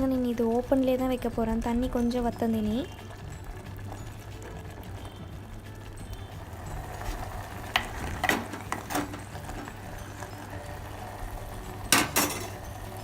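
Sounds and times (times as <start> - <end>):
low simmering hum: 0.0 - 13.0.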